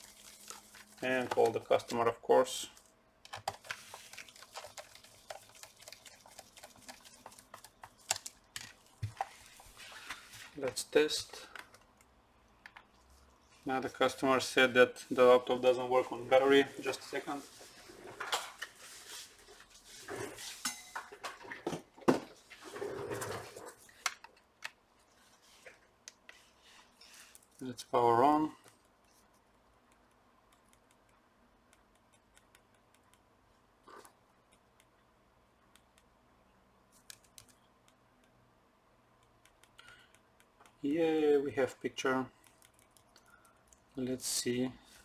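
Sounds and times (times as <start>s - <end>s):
objects clattering on a workbench: 20.0s - 24.3s.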